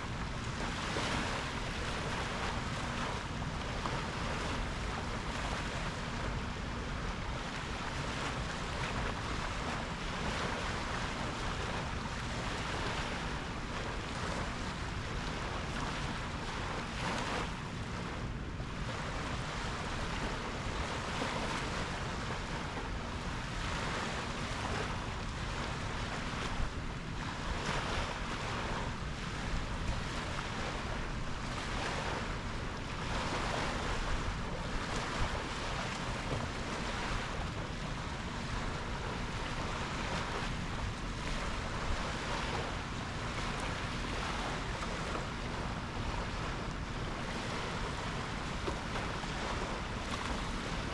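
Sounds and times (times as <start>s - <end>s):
sea waves breaking: 0.0s - 50.9s
wind rumbling on microphone: 0.0s - 50.9s.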